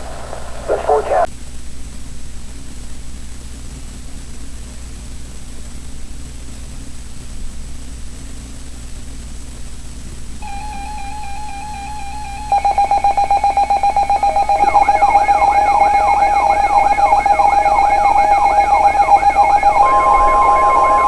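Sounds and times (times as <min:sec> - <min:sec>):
higher steady alarm tone: 0:10.4 - 0:21.0
rapid pulsing beeps: 0:10.4 - 0:21.0
steady alert tone: 0:10.4 - 0:21.0.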